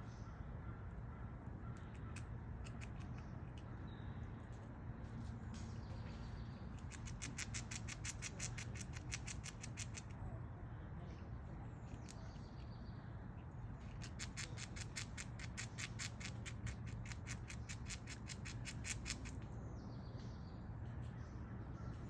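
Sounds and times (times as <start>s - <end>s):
squirrel gnawing nut shell: 1.6s - 3.7s, 6.7s - 10.2s, 11.8s - 12.7s, 13.4s - 19.4s.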